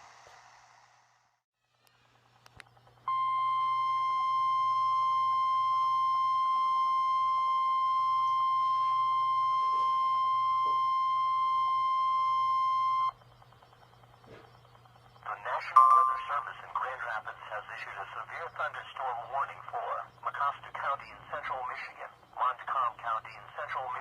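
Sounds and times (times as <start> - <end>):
steady alarm tone beep: 3.1 - 17.1.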